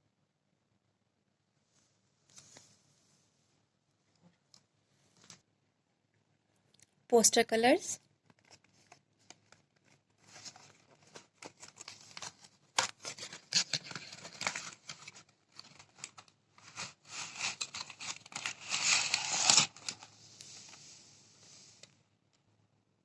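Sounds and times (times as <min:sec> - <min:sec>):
packaging crinkling and tearing: 0:08.3 - 0:20.1.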